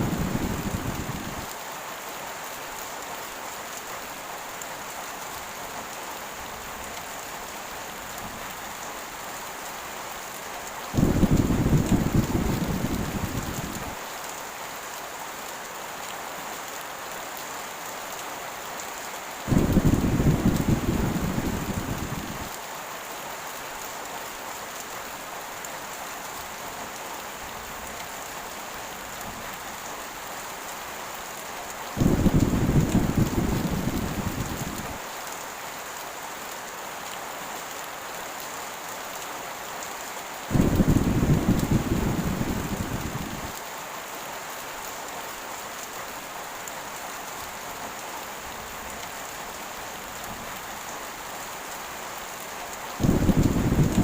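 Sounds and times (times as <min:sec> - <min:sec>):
heavy rain: 0:00.0 - 0:54.0
thunder rolling: 0:11.0 - 0:13.9, 0:19.5 - 0:22.5, 0:32.0 - 0:34.9, 0:40.5 - 0:43.5, 0:53.0 - 0:54.0.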